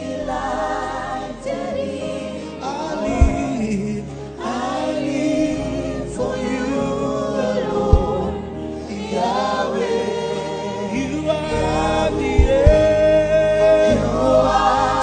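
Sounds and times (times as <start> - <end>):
choir singing gospel: 0.0 - 15.0
low thud: 3.2 - 3.5, 7.9 - 8.3, 12.3 - 13.0.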